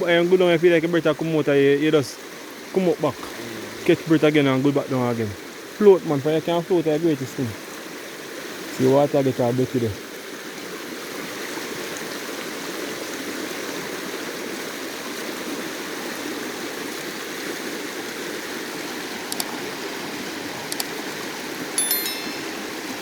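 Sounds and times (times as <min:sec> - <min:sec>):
river water flowing: 0:00.0 - 0:23.0
sharp clicks: 0:19.3 - 0:19.6, 0:20.7 - 0:20.9.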